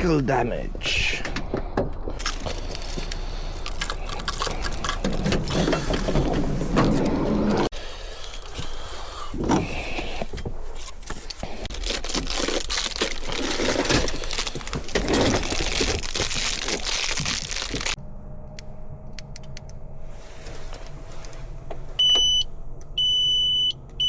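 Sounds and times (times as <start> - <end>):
crackling rustle: 10.7 - 18.0.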